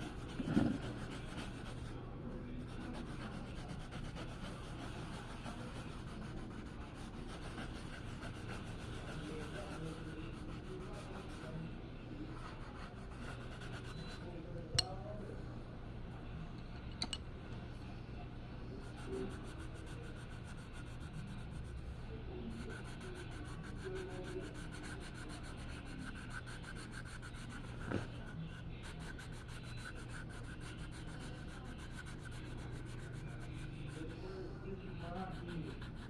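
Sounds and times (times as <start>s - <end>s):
art tool rubbing on surface: 0.0s - 2.0s, 2.6s - 14.3s, 22.4s - 36.0s.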